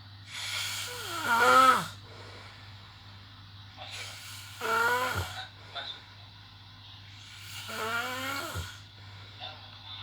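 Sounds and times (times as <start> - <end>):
faint steady hum: 0.0 - 10.0
person snoring: 0.3 - 2.0, 3.9 - 5.5, 7.2 - 8.8.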